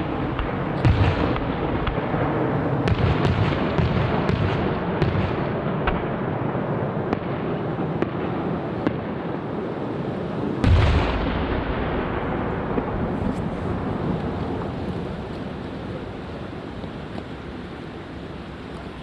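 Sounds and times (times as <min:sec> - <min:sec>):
fireworks exploding: 0:00.0 - 0:19.0
loud boom: 0:10.6 - 0:14.6.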